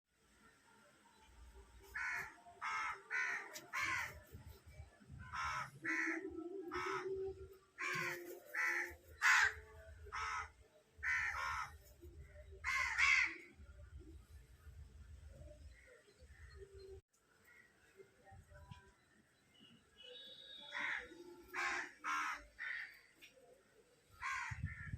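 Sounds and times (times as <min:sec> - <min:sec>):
crow cawing: 0:02.0 - 0:04.2, 0:05.4 - 0:07.1, 0:07.8 - 0:11.7, 0:12.6 - 0:13.4, 0:20.7 - 0:23.0, 0:24.2 - 0:24.9.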